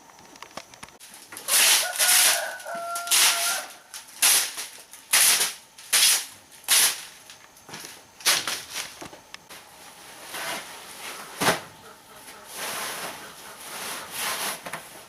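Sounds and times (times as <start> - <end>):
footsteps crunching on dry litter: 1.0 - 11.3
chicken calling: 1.5 - 3.9.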